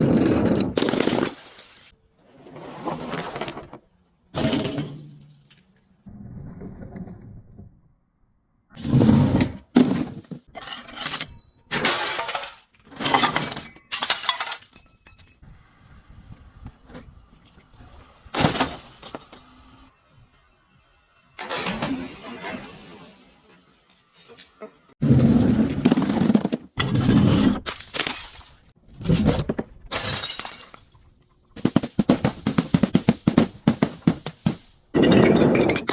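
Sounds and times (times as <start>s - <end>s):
glass bottles shattering: 0.8s - 2.0s, 10.5s - 15.4s, 27.7s - 28.7s, 29.9s - 31.0s
glass pieces ringing: 10.6s - 15.4s.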